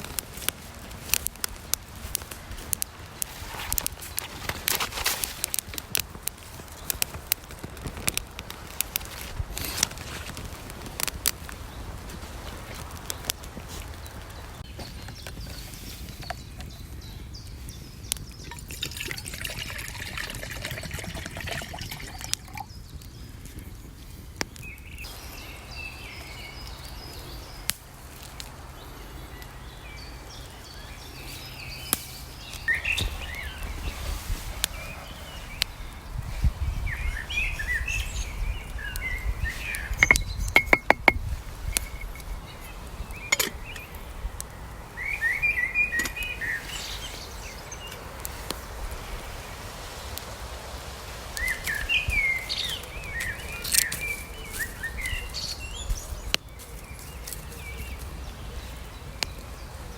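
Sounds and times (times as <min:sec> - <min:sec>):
birds chirping: 0:00.0 - 0:59.9
water trickling and dripping: 0:18.2 - 0:22.7.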